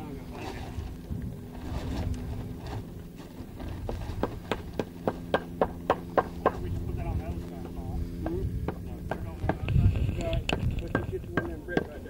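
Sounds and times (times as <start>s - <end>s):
steady low hum: 0.0s - 12.0s
rapid hammering: 4.2s - 6.7s, 8.2s - 9.7s, 10.4s - 12.0s.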